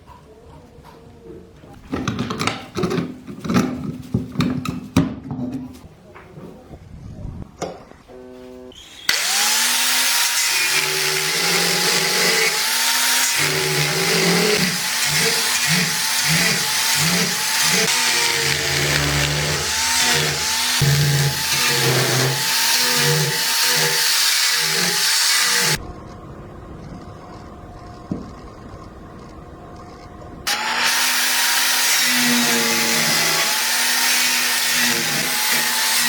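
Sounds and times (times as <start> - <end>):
power tool grinding steel: 8.8 - 25.8, 30.5 - 36.0.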